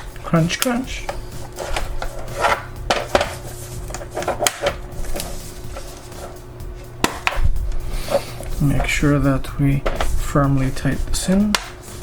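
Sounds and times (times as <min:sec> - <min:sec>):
plastic scraping: 0:01.0 - 0:07.4
plastic clips snapping in: 0:03.9 - 0:04.8.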